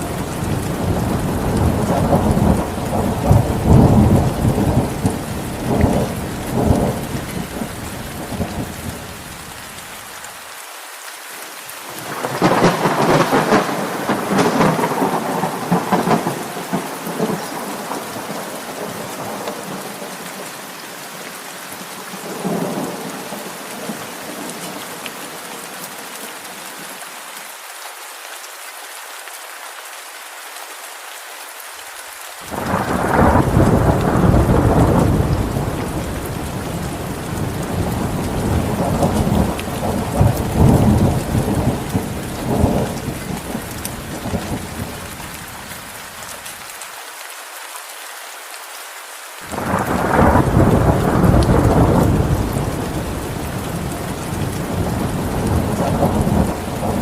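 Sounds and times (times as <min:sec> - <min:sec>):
steady rain falling: 0:00.0 - 0:57.0
rolling thunder: 0:12.1 - 0:19.8, 0:32.5 - 0:45.0, 0:49.5 - 0:57.0.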